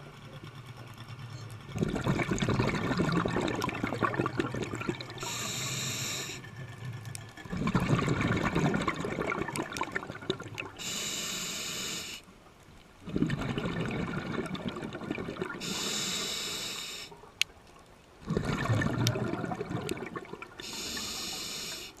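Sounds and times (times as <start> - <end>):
bubbling exhale: 1.8 - 6.5, 7.5 - 12.2, 13.0 - 17.1, 18.2 - 22.0
regulator hissing inhale: 5.2 - 6.5, 10.8 - 12.2, 15.6 - 17.1, 20.6 - 22.0.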